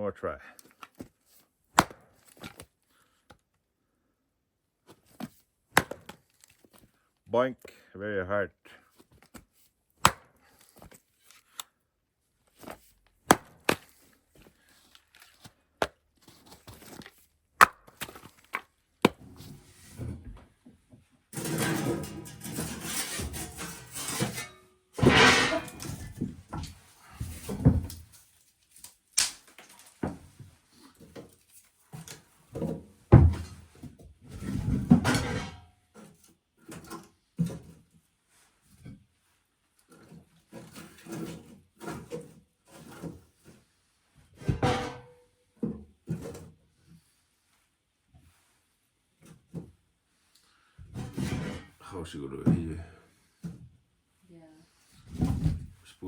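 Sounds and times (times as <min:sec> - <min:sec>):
scraping and rustling: 0:21.4 - 0:32.5.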